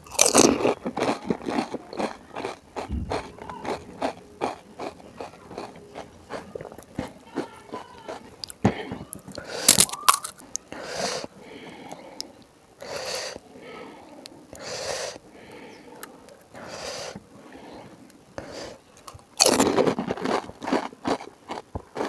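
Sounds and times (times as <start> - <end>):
crunching and chewing: 0.0 - 22.0
sharp breaths: 7.8 - 19.0.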